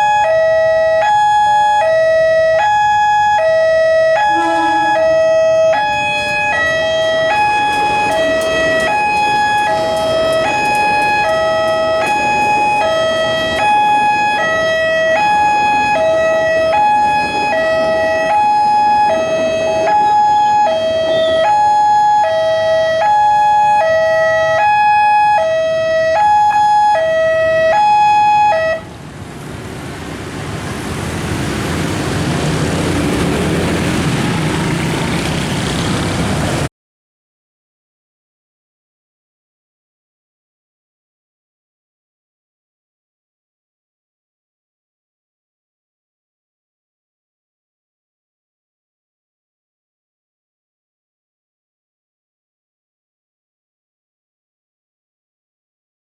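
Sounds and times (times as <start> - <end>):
level crossing two-tone alarm: 0.0 - 28.8
road traffic engines: 0.0 - 36.7.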